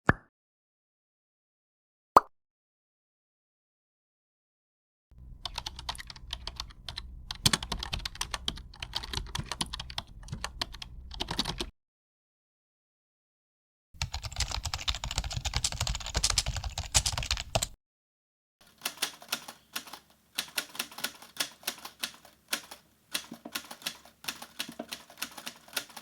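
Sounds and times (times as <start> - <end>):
keyboard typing: 5.2 - 11.7, 14.0 - 17.8, 18.6 - 26.0.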